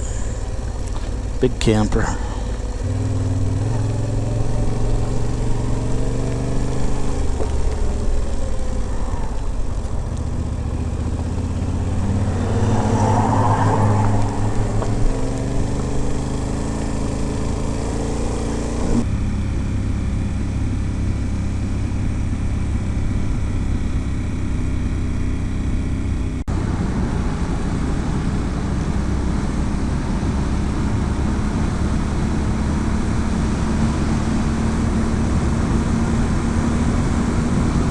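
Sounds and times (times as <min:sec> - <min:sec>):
motorcycle engine running: 0:00.0 - 0:37.9
wind rush on microphone: 0:26.6 - 0:37.9.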